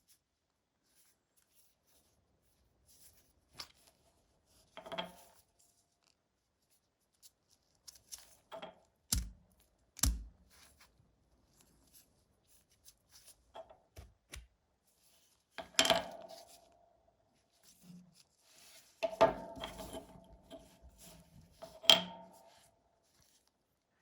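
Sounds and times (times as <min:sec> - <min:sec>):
metal parts clicking and tapping: 0:08.6 - 0:09.4, 0:10.0 - 0:10.3.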